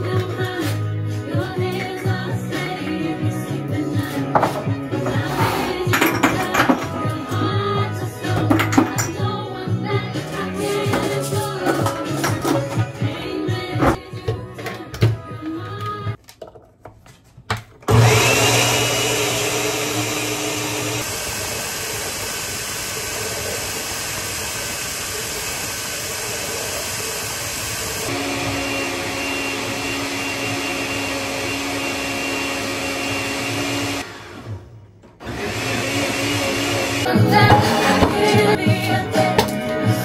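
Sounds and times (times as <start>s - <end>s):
small appliance motor whining: 17.9s - 34.6s.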